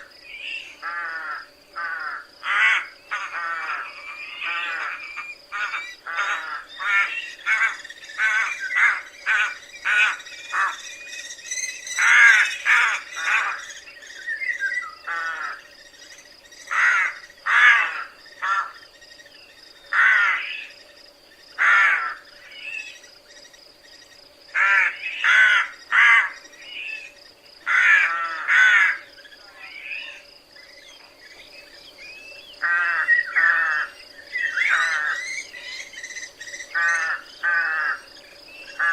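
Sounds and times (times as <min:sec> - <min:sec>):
rooks cawing: 0:00.0 - 0:11.0, 0:11.9 - 0:13.8, 0:14.9 - 0:15.7, 0:16.6 - 0:18.9, 0:19.9 - 0:20.7, 0:21.6 - 0:22.4, 0:24.5 - 0:26.4, 0:27.6 - 0:29.2, 0:32.6 - 0:35.8, 0:36.6 - 0:38.1, 0:38.7 - 0:38.9.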